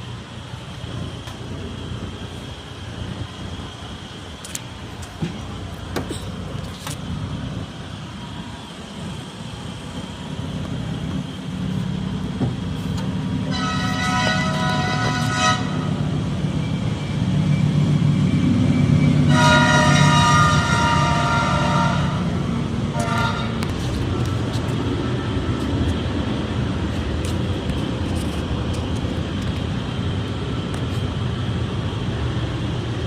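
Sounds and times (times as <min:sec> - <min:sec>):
heavy vehicle engine running: 0:00.0 - 0:33.0
vehicle horn: 0:13.4 - 0:16.0, 0:19.3 - 0:23.7.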